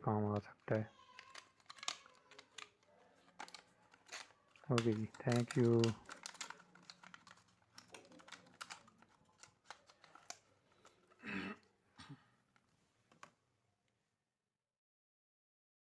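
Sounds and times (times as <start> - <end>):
faint clicks and taps: 0.4 - 11.2, 12.5 - 13.4.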